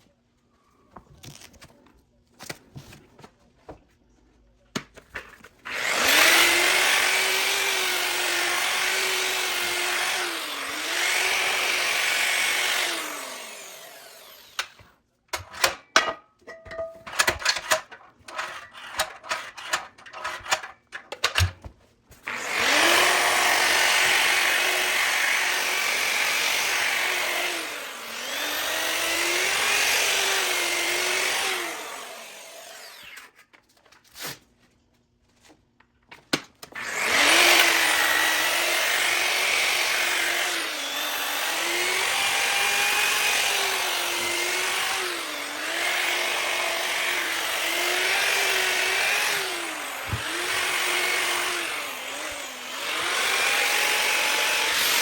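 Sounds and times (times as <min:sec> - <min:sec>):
clicks and knocks: 0:14.6 - 0:21.7
polisher sanding cast iron: 0:36.8 - 0:55.0.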